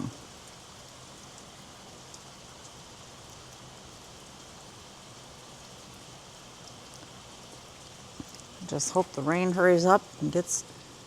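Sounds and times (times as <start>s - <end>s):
rain falling: 0.0s - 11.0s
faint drip ticks: 6.6s - 9.2s.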